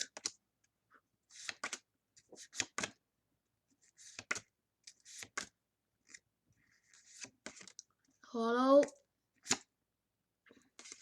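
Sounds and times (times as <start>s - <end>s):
cards sliding and scraping: 0.0s - 0.4s, 1.2s - 3.0s, 3.7s - 7.9s, 9.3s - 9.7s, 10.5s - 11.0s.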